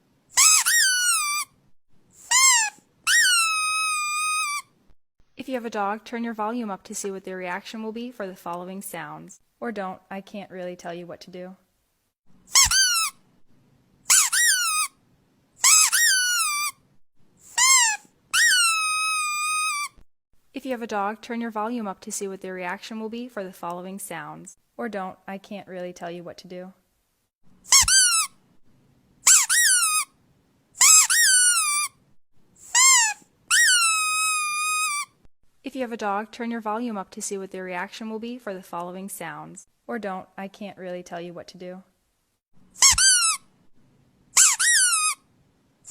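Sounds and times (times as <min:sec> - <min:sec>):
squeaky toy squeaking: 0:00.4 - 0:01.6, 0:02.2 - 0:04.8, 0:12.5 - 0:13.2, 0:14.1 - 0:15.0, 0:15.6 - 0:16.8, 0:17.4 - 0:20.0, 0:27.7 - 0:28.4, 0:29.2 - 0:30.1, 0:30.8 - 0:32.0, 0:32.6 - 0:35.2, 0:42.8 - 0:43.5, 0:44.4 - 0:45.2.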